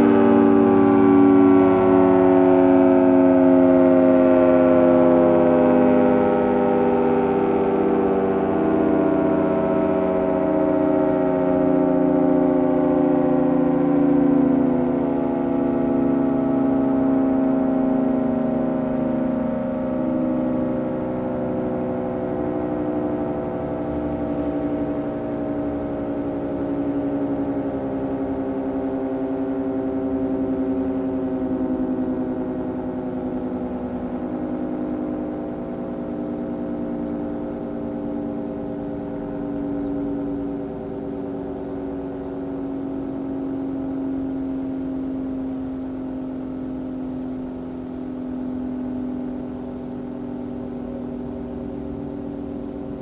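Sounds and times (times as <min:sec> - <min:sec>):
warning siren falling in pitch: 0:00.0 - 0:53.0.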